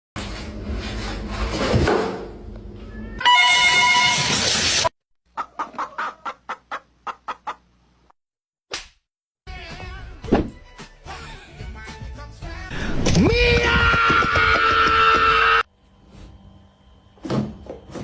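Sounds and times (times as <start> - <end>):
chicken clucking: 5.3 - 7.7
chicken squawking: 5.4 - 7.6.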